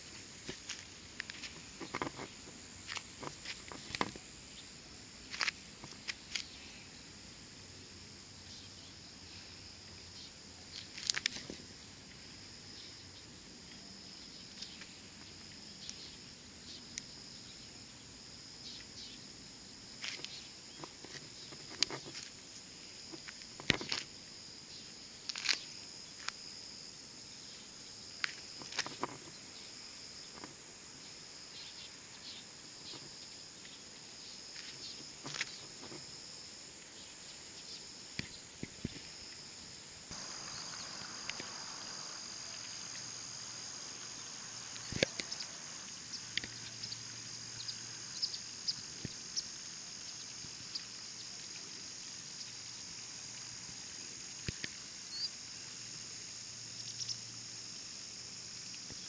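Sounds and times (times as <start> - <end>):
crickets trilling: 0.0 - 59.0.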